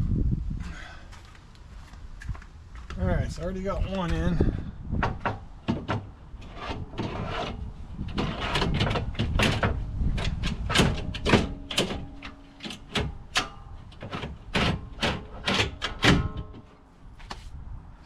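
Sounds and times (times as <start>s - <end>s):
metal drawer clacking and scraping: 5.1s - 16.7s.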